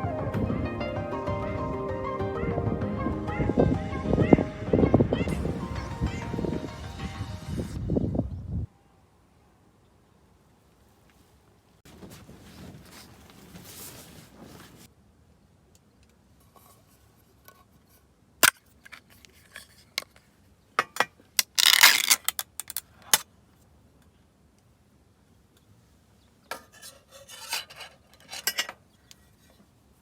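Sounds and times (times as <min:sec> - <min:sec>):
scraping: 0:11.9 - 0:14.9
small objects clicking and knocking: 0:18.4 - 0:23.2.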